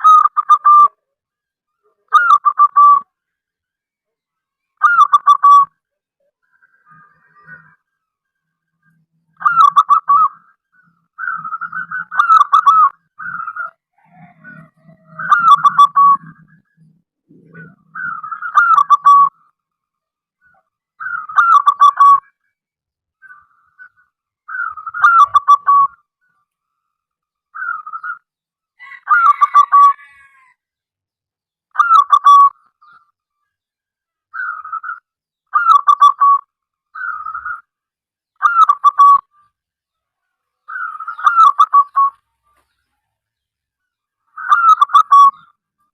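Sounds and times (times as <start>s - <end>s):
dove cooing: 11.2s - 19.4s, 24.5s - 26.0s, 34.4s - 36.4s, 40.7s - 42.2s.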